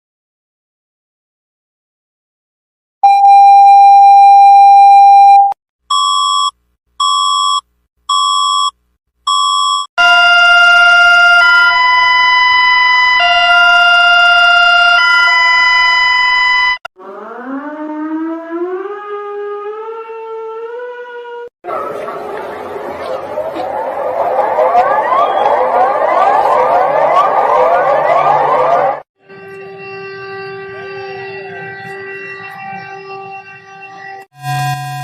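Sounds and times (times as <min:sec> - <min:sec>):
short beeps: 0:03.0 - 0:09.9
loud steady alarm tone: 0:10.0 - 0:20.2, 0:21.6 - 0:35.0
alternating alarm chords: 0:21.7 - 0:35.0.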